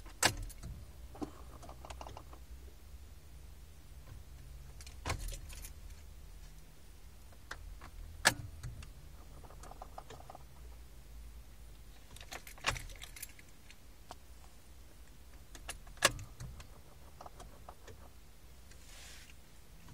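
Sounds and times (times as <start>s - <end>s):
low road rumble: 0.0s - 19.9s
glovebox rattling: 12.1s - 13.8s.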